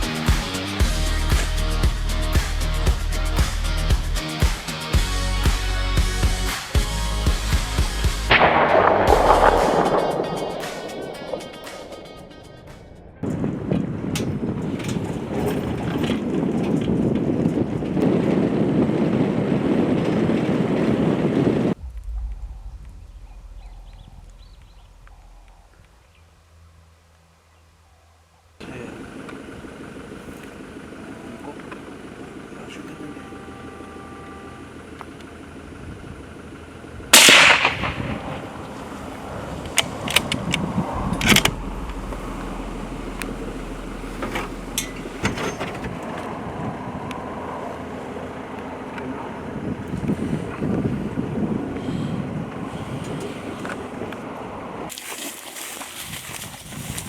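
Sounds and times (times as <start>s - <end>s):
rifle shot: 8.3s - 12.8s, 37.2s - 45.2s
wind buffeting microphone: 8.3s - 26.2s, 36.9s - 47.5s, 49.5s - 54.9s, 56.0s - 57.0s
sharp clicks and knocks: 39.7s - 46.1s.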